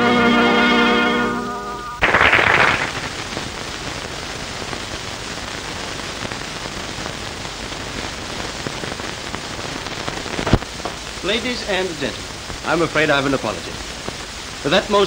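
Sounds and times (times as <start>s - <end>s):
film soundtrack hiss and crackle: 0.0s - 15.0s
loud noisy burst: 1.6s - 15.0s.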